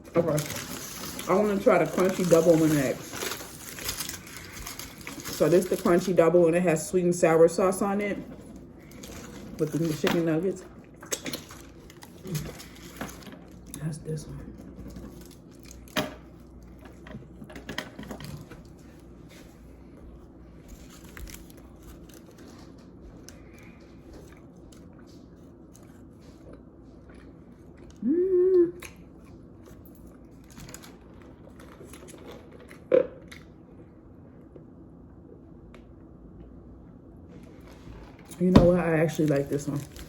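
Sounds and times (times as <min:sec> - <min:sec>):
person chewing crunchy food: 0:20.6 - 0:28.0.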